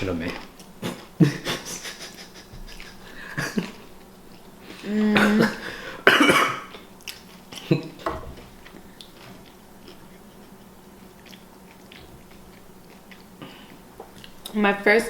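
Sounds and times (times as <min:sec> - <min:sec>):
person coughing: 0:05.0 - 0:06.7
chewing and mouth clicks: 0:06.7 - 0:14.6.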